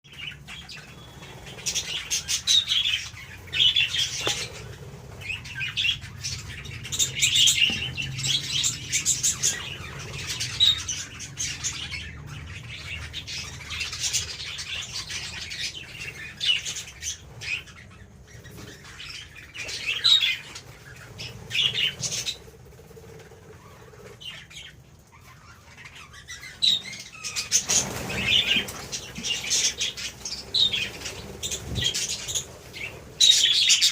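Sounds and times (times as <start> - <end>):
budgerigars chattering: 0.2 - 22.5, 23.2 - 33.9.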